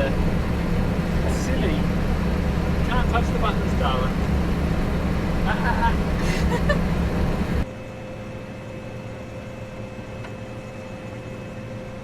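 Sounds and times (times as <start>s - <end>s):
steady high whine: 0.0s - 8.2s
heavy engine droning: 0.0s - 8.3s.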